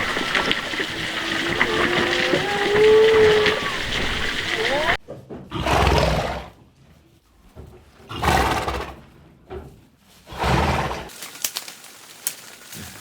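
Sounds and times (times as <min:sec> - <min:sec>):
large animal deep rough calls: 0:00.0 - 0:06.6.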